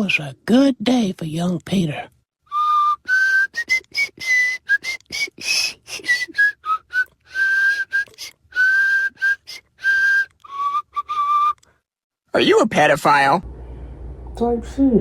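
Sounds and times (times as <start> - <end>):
person whistling a tune: 2.5 - 11.6.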